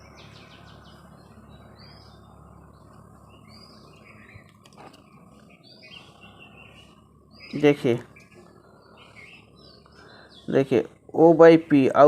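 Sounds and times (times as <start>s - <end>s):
birds chirping: 0.0s - 12.0s
steady low hum: 0.0s - 12.0s.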